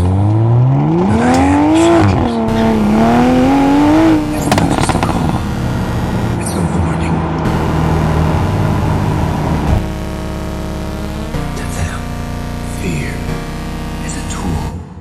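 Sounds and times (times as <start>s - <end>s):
exhaust cracks: 0.0s - 9.9s
sports car engine accelerating: 0.0s - 14.7s.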